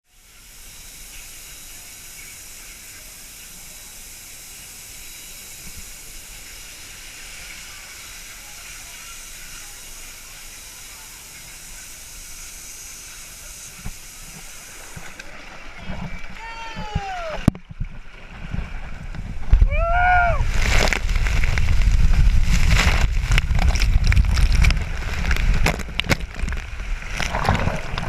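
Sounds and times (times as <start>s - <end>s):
water rushing down a slide: 0.2s - 28.0s
faint voices: 7.2s - 17.5s.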